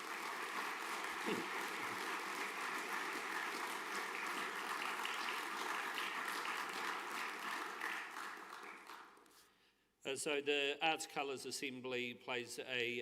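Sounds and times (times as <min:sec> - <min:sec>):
audience applauding: 0:00.0 - 0:09.2.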